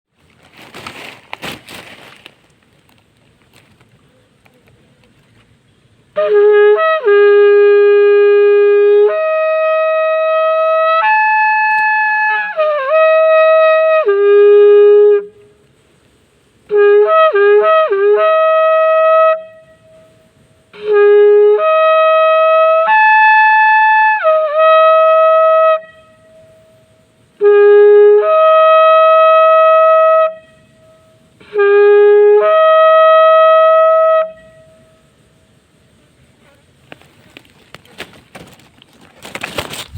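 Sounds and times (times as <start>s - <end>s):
shofar blasts: 6.2s - 15.6s, 16.7s - 35.2s.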